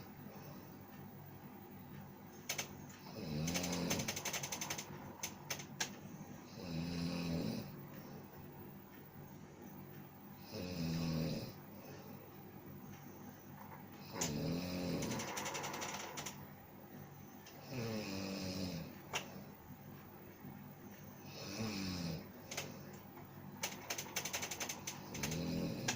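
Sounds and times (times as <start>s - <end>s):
sharp clicks: 2.4s - 6.0s, 14.2s - 16.4s, 23.6s - 25.9s
person snoring raspingly: 21.3s - 22.2s, 25.1s - 25.9s.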